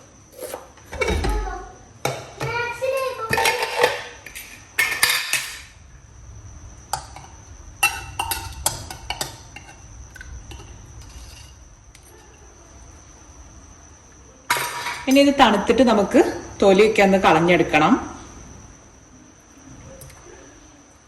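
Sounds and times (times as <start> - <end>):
dishes and utensils clattering: 3.2 - 5.7, 7.8 - 9.8, 14.5 - 15.1.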